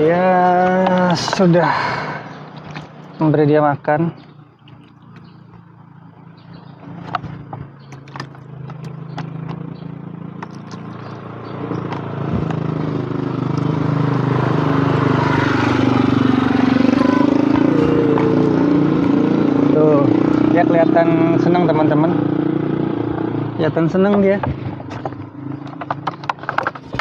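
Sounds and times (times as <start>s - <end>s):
vehicle engine: 0.0s - 27.0s
low hum: 4.2s - 20.6s.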